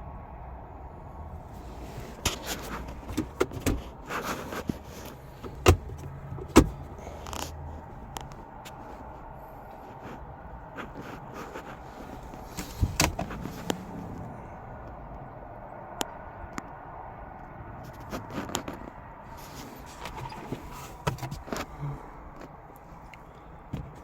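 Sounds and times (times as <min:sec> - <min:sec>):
car door and trim clicks: 0:05.4 - 0:07.4, 0:12.4 - 0:13.8.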